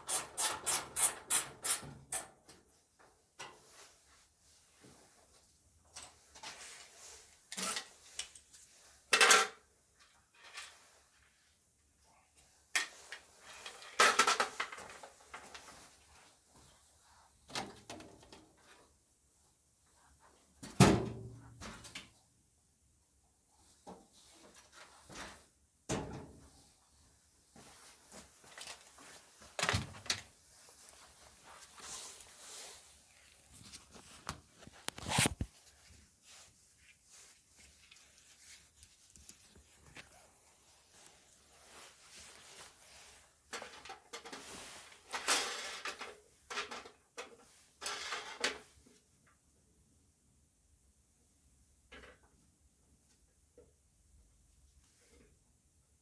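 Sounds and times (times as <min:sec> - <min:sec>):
dryer parts knocking and rattling: 0:25.2 - 0:26.5.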